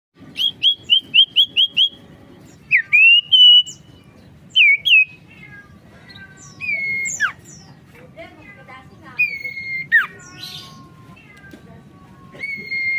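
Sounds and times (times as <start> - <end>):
bird whistling song: 0.3 - 5.3, 6.3 - 7.8, 9.1 - 10.9, 12.4 - 12.9.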